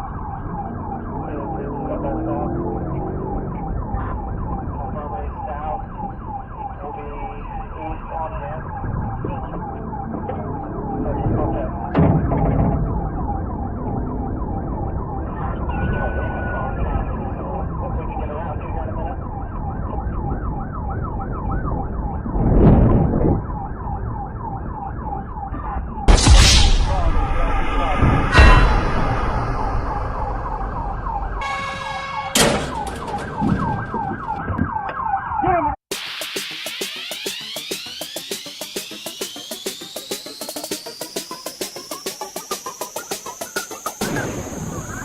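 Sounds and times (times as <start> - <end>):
vehicle engine and road noise: 0.0 - 6.6, 8.1 - 35.1
police siren yelping: 0.0 - 45.0
loud noise bursts: 26.1 - 32.9.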